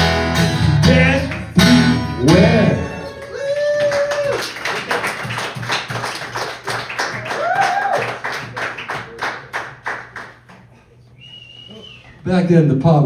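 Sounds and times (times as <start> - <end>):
audience clapping: 0.6 - 10.9
person whooping: 3.0 - 4.6, 7.1 - 8.2, 11.3 - 12.1.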